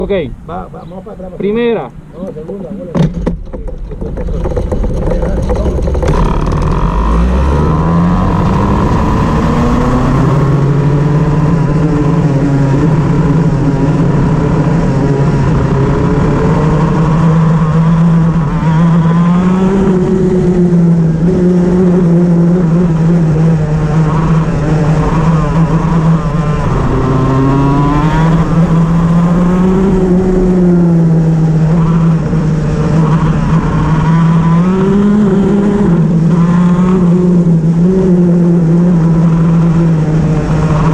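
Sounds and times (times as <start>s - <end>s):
kart engine revving: 2.1s - 40.9s.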